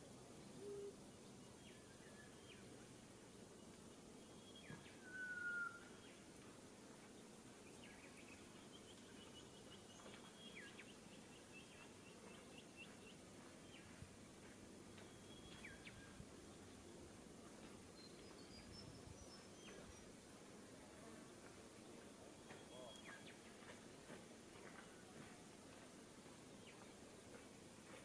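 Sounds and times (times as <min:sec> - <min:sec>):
outdoor background noise: 0:00.0 - 0:28.0
bird whistling song: 0:04.4 - 0:06.1, 0:15.1 - 0:16.2.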